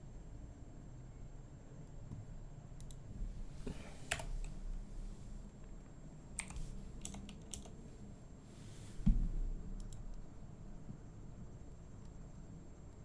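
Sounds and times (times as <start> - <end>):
computer keyboard clicks: 6.4 - 7.8.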